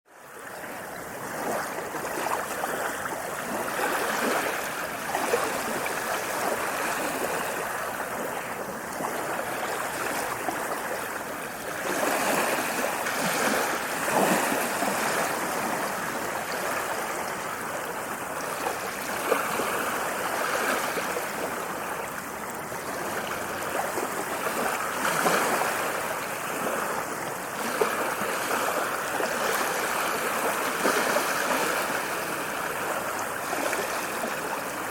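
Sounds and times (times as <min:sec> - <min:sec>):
small waves splashing on beach: 0:00.2 - 0:34.9.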